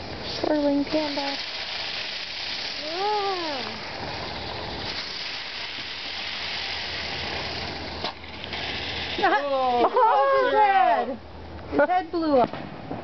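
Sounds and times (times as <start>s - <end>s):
firework hissing: 0.0s - 10.0s.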